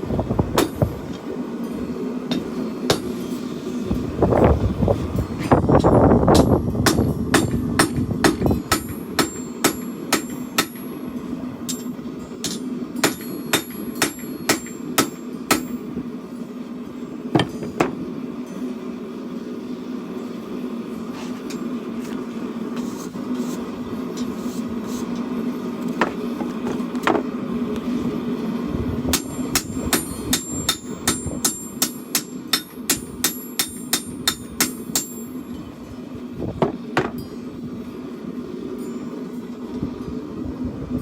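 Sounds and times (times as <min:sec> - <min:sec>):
steady hum: 0:00.0 - 0:41.0
hammer striking steel on anvil: 0:00.6 - 0:01.0, 0:02.3 - 0:03.4, 0:05.4 - 0:15.9, 0:29.1 - 0:35.4.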